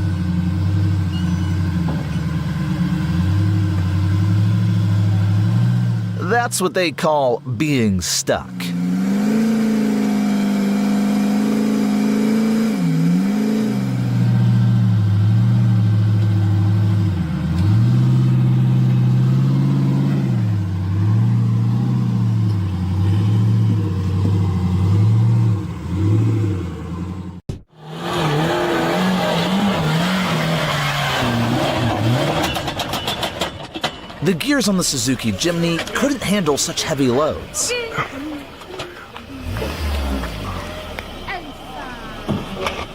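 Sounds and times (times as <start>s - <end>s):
off-road vehicle engine revving: 0.0s - 6.8s, 7.7s - 42.9s
different engine running: 8.6s - 42.9s.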